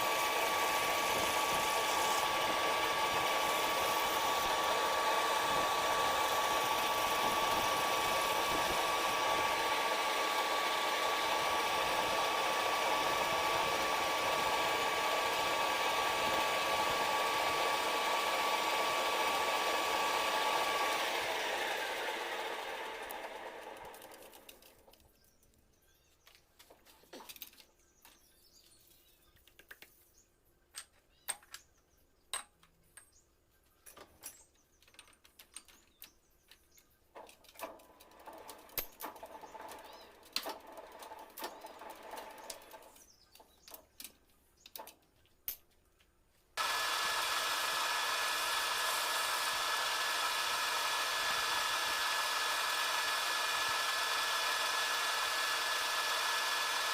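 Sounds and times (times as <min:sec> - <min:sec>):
metal lathe running: 0:00.0 - 0:24.5, 0:38.2 - 0:42.9, 0:46.6 - 0:56.9.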